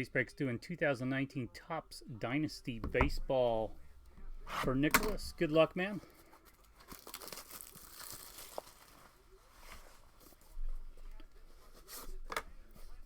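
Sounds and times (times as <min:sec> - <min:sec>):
packaging crinkling and tearing: 0:06.1 - 0:09.8.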